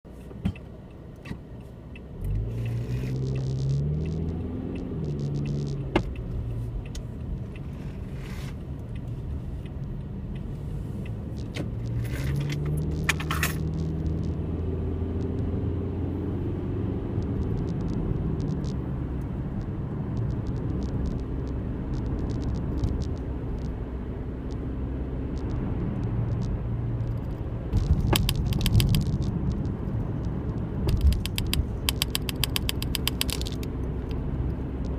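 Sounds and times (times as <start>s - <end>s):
car engine starting and accelerating: 2.0s - 34.9s
light rattling and clicking: 27.1s - 29.7s, 30.8s - 34.2s.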